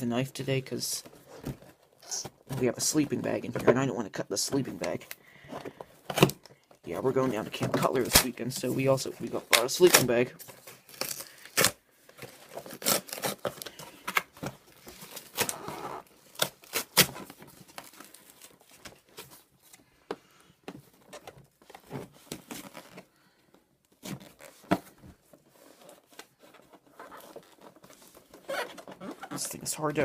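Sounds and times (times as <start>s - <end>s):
packing tape ripping: 10.8s - 11.8s, 12.4s - 14.3s, 15.0s - 18.2s.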